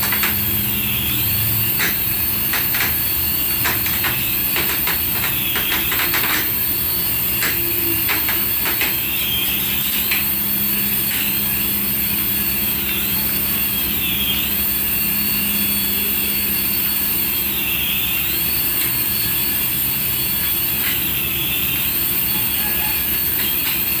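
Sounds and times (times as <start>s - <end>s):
remote-control toy whirring: 0.0s - 11.5s, 16.7s - 24.0s.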